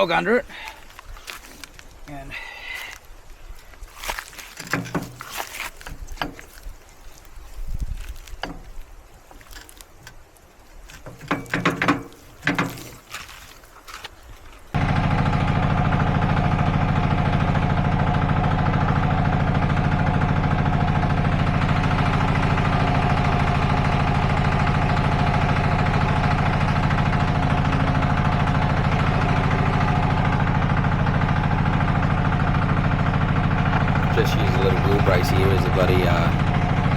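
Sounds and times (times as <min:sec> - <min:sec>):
metal knocks and clanks: 0:11.1 - 0:13.0
engine running steadily: 0:14.7 - 0:36.9.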